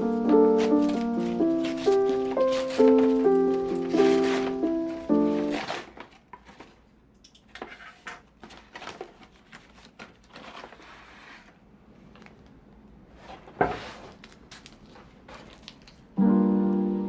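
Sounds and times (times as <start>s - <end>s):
packages rustling: 0.0s - 6.9s, 7.5s - 11.4s, 13.4s - 16.1s.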